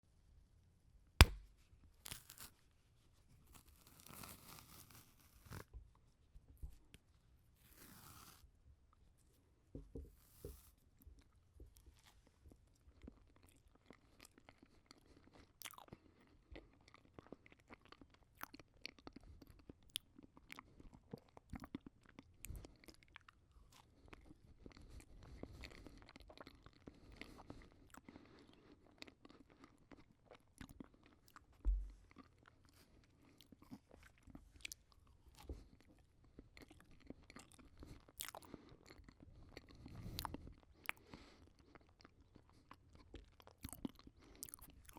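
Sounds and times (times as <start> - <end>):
person chewing: 1.2 - 1.5, 13.1 - 44.9
low thump: 31.6 - 32.0.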